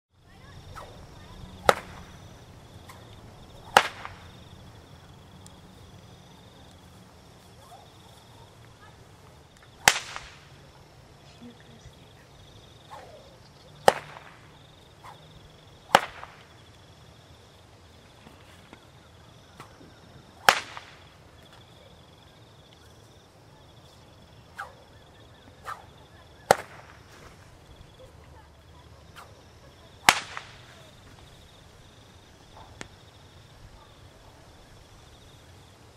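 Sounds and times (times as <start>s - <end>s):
whip cracking: 0.6s - 4.5s, 9.6s - 10.6s, 12.8s - 16.6s, 19.6s - 19.8s, 20.4s - 21.2s, 24.5s - 24.9s, 25.6s - 27.2s, 29.1s - 29.4s, 30.0s - 31.3s.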